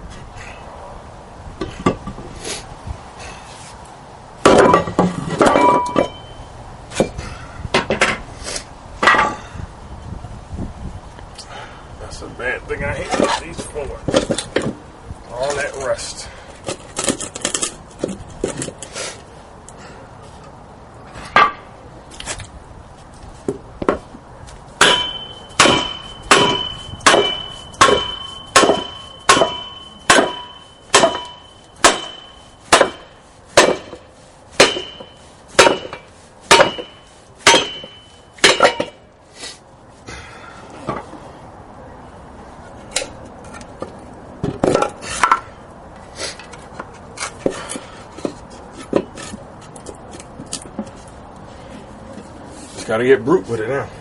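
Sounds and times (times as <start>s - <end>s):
metallic ring: 4.7s - 6.6s, 24.8s - 33.2s, 34.6s - 39.0s.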